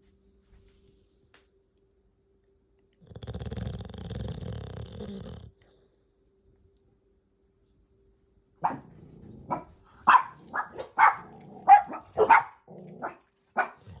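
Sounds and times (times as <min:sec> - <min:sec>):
dog barking: 0:08.6 - 0:08.9, 0:09.5 - 0:14.0.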